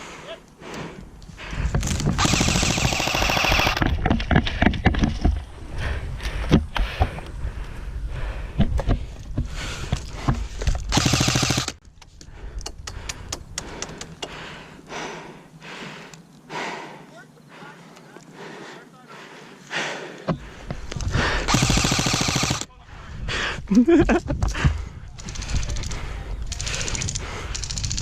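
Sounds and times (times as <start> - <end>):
airsoft gun full-auto bursts: 2.2 - 3.8, 10.9 - 11.8, 21.5 - 22.7.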